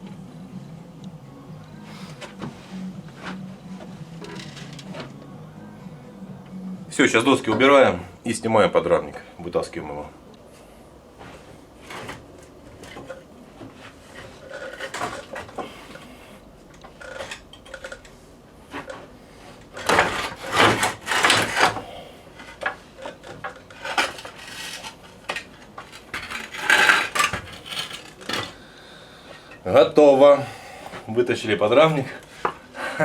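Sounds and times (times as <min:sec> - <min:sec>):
metal subframe scraping and clanking: 0:19.7 - 0:28.6.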